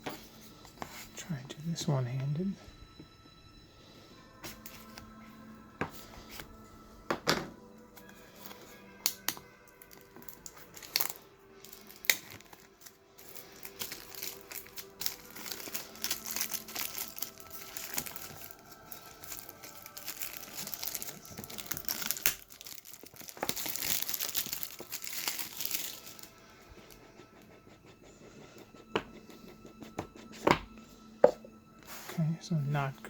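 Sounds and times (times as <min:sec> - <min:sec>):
plastic wrapping crinkling: 0:08.4 - 0:26.4.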